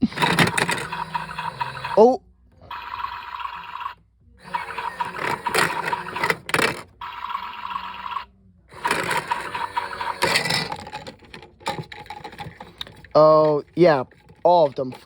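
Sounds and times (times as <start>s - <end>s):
items tumbling and knocking: 0.0s - 1.7s, 8.8s - 15.0s
toy washing machine motor whirring: 0.0s - 15.0s.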